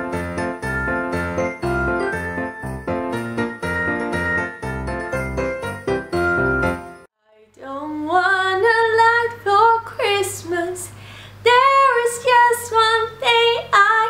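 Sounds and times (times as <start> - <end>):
woman singing unaccompanied: 7.2 - 14.0.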